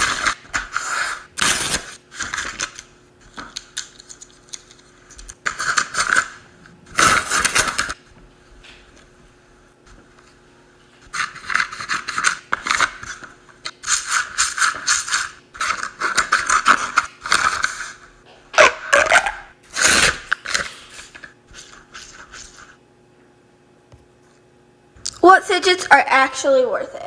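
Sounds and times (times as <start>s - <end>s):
fidget toy scratching and scraping: 0.0s - 8.0s, 11.1s - 18.0s.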